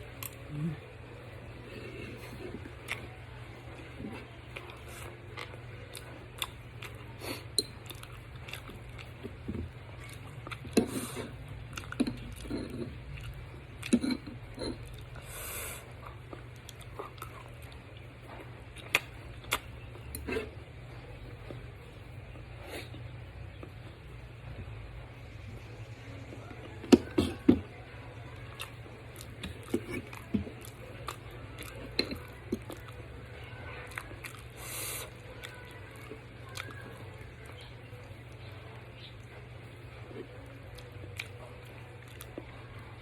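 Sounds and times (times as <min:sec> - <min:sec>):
steady low hum: 0:00.0 - 0:43.0
person chewing with mouth smacks: 0:04.2 - 0:15.1, 0:18.7 - 0:20.5, 0:28.4 - 0:33.0, 0:33.9 - 0:37.6, 0:40.7 - 0:41.4.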